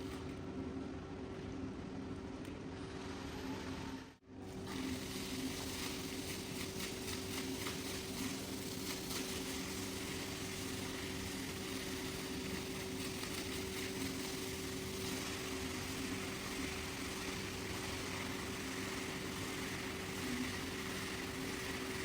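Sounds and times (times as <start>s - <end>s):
cleaning machine motor hum: 2.9s - 22.0s
spraying water hiss: 4.6s - 22.0s.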